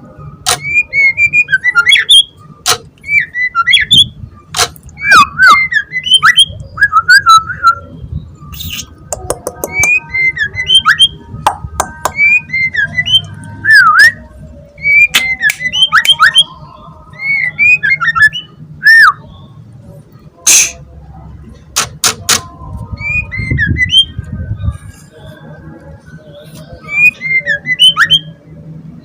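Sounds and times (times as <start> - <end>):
bird singing whistled phrases: 3.0 - 4.2, 5.0 - 9.0, 12.1 - 14.2, 14.8 - 19.5, 23.0 - 24.2, 26.7 - 28.4.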